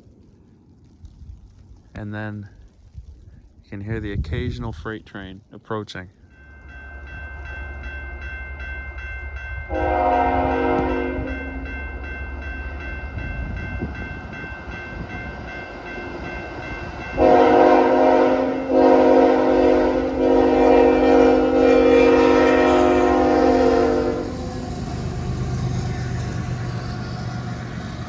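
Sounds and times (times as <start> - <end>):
train rumbling: 6.2 - 28.0
train horn chord: 9.7 - 11.8, 17.1 - 24.7.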